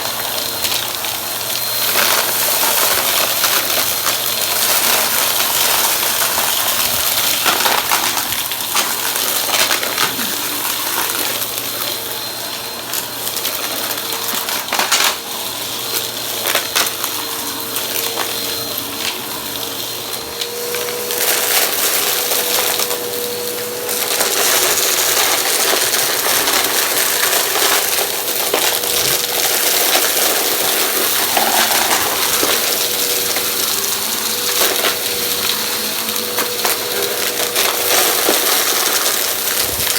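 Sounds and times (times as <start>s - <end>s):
vacuum cleaner running: 0.0s - 39.9s
debris clicking and rattling: 24.0s - 39.9s.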